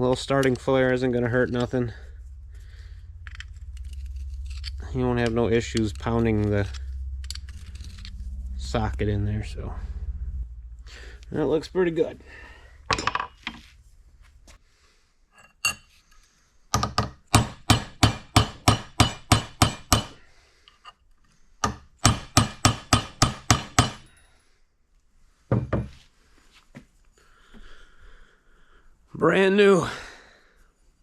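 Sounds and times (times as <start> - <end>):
hammer striking metal: 16.8 - 20.2, 21.6 - 24.1.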